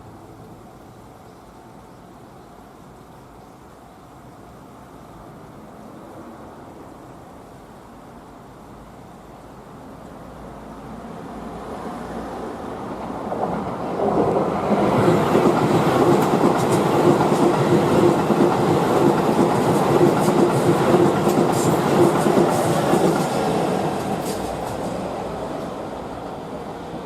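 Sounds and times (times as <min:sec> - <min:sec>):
electric train passing: 0:08.4 - 0:27.0.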